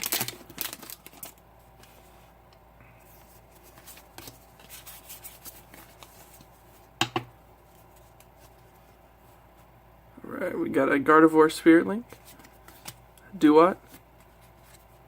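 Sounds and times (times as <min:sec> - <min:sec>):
trading cards rustling and sliding: 0:03.0 - 0:06.9, 0:12.1 - 0:13.1, 0:13.8 - 0:15.0.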